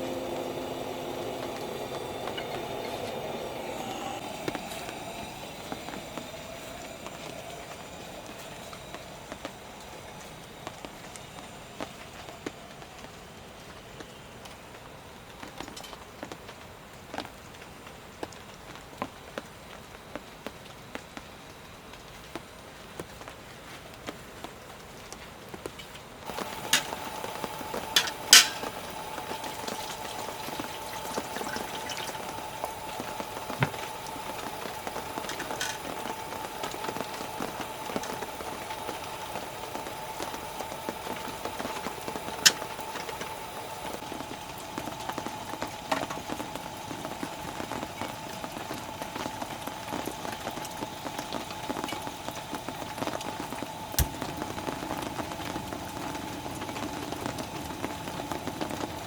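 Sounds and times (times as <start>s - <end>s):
faint steady tone: 0.0s - 15.1s, 26.3s - 50.0s
food sizzling on gas burner: 0.0s - 24.8s, 26.2s - 59.0s
utensils clinking: 26.3s - 37.0s.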